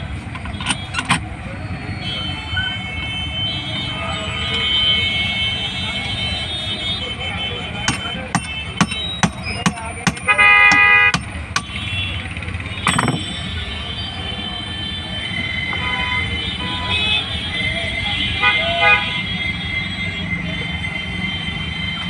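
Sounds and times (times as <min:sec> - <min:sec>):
street traffic noise: 0:00.0 - 0:22.0
vehicle horn honking: 0:02.0 - 0:20.2
sharp taps: 0:07.9 - 0:11.8.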